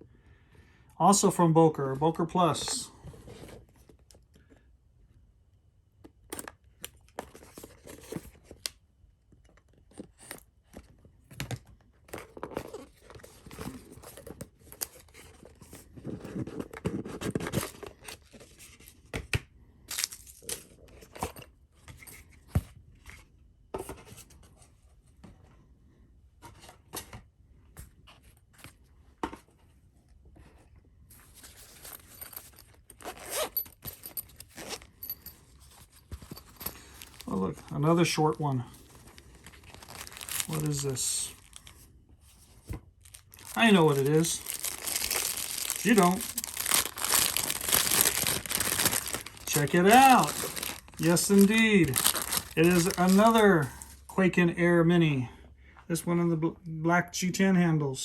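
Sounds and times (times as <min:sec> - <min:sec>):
package being cut and torn open: 0:43.1 - 0:53.4.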